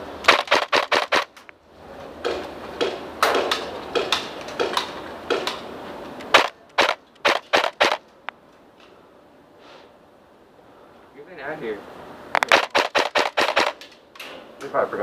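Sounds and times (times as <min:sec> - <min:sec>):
airsoft gun shots: 0:00.2 - 0:01.3, 0:06.3 - 0:08.0, 0:12.4 - 0:13.9.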